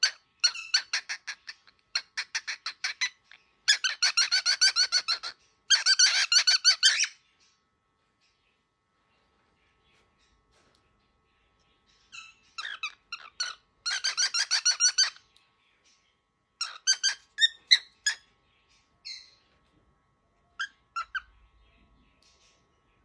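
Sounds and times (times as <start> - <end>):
cockatiel squeaky calls: 0.0 - 7.2, 12.1 - 15.2, 16.6 - 18.3, 20.6 - 21.3.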